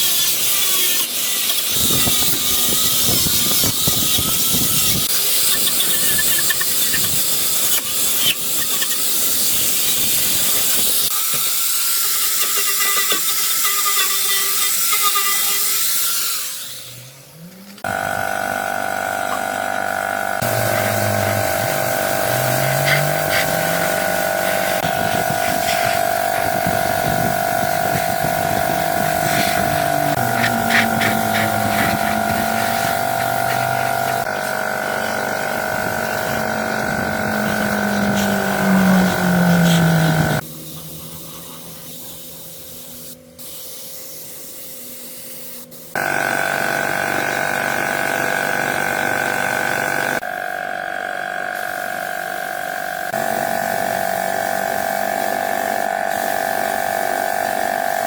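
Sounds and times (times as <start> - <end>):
small power tool motor whining: 20.4 - 40.4.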